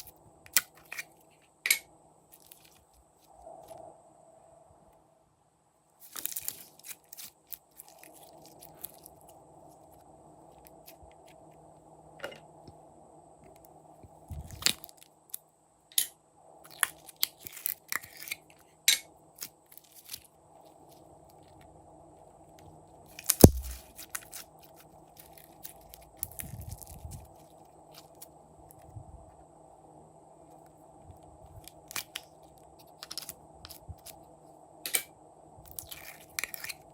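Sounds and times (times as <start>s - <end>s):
slime crackling and popping: 23.2s - 24.4s.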